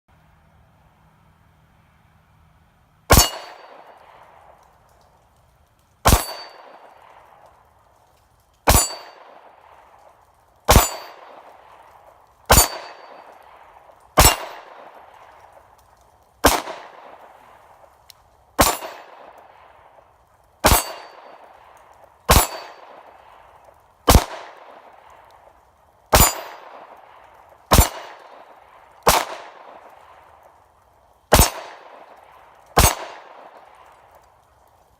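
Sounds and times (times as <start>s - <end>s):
steel target clanging: 3.1s - 3.9s, 6.1s - 6.9s, 8.7s - 9.2s, 10.7s - 11.2s, 12.5s - 13.4s, 14.2s - 14.7s, 18.6s - 19.1s, 20.6s - 21.4s, 22.3s - 22.8s, 26.2s - 26.6s
pistol shots: 3.1s - 4.6s, 6.0s - 7.4s, 8.6s - 10.1s, 10.7s - 11.8s, 12.5s - 15.6s, 16.4s - 17.4s, 18.6s - 19.8s, 20.6s - 25.3s, 26.1s - 30.4s, 31.3s - 33.9s.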